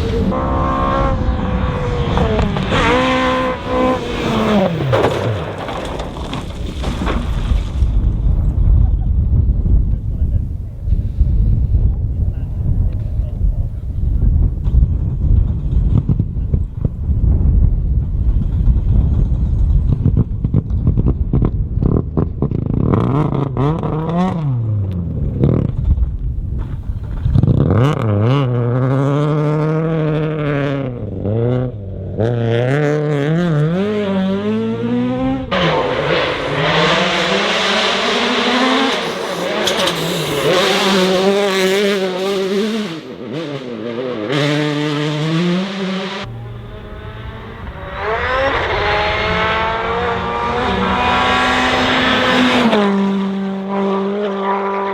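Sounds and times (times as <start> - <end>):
rally car engines revving: 0.0 - 7.8, 18.4 - 26.0, 26.6 - 54.9
engine and tyre rumble: 0.0 - 54.9.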